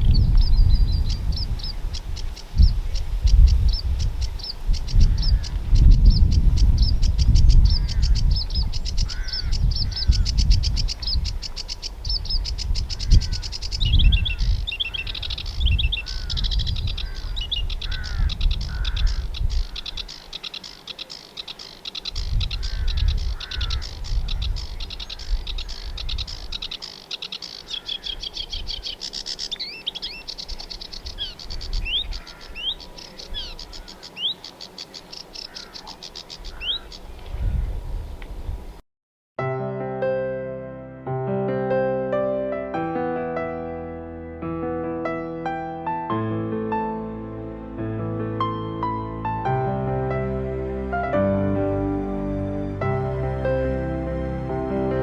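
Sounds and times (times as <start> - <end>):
wind rumbling on microphone: 0.0 - 20.6, 21.8 - 26.9, 27.6 - 38.8
warbler song: 0.0 - 38.7, 42.9 - 55.0.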